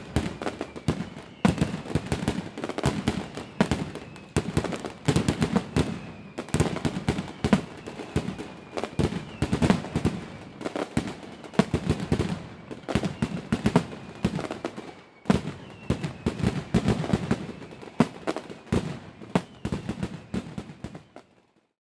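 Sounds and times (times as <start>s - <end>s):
fireworks bangs and crackling: 0.0s - 21.6s.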